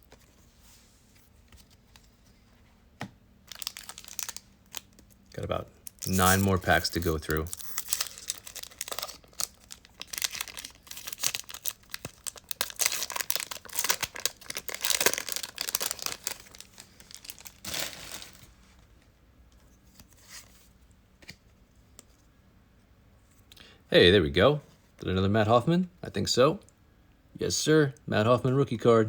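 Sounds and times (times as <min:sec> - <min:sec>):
wrapper tearing and crinkling: 0:03.5 - 0:05.2, 0:05.9 - 0:18.6.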